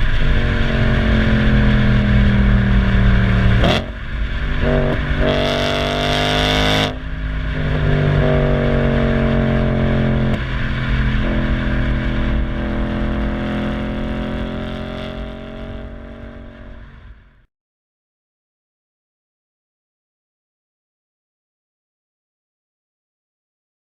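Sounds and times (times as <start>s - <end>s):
car exhaust under acceleration: 0.0s - 17.4s.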